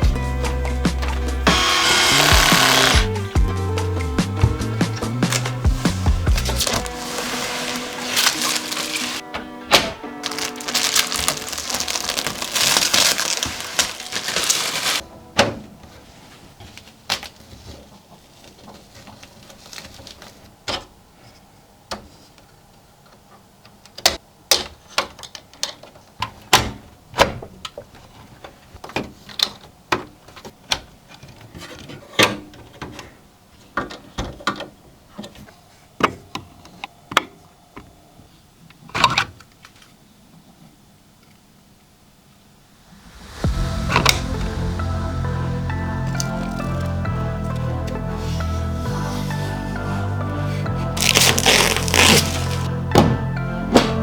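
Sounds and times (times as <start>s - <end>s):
background music: 0.0s - 16.4s, 42.9s - 54.0s.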